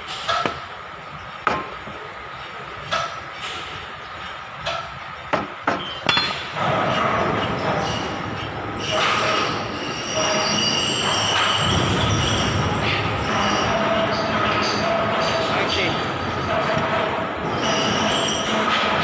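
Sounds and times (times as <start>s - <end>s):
metal tapping on metal: 4.6s - 6.6s
metal scraping squeal: 5.8s - 19.0s.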